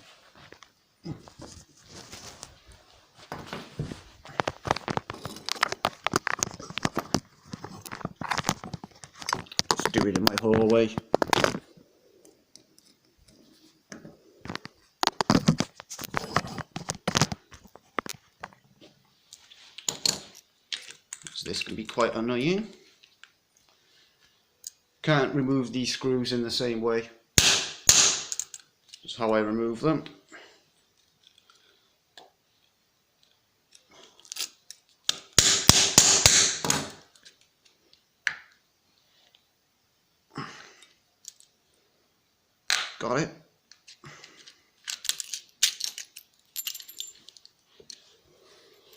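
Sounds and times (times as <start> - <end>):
sharp metal strikes: 27.4 - 28.4.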